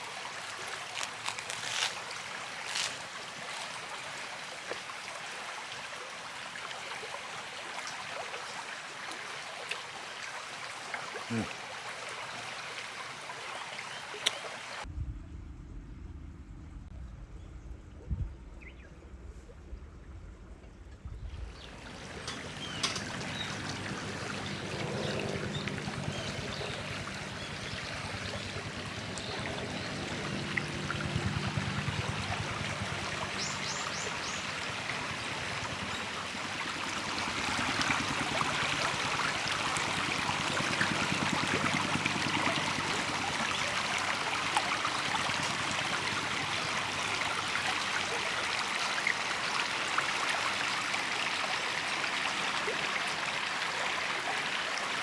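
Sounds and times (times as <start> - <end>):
fine crackles and ticks: 0.9 - 3.7.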